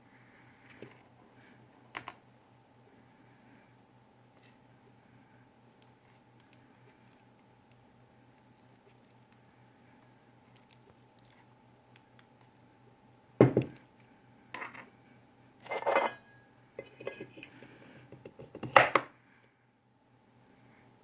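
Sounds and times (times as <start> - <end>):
faint mains hum: 0.0 - 21.0
knock of hard parts: 13.4 - 13.8.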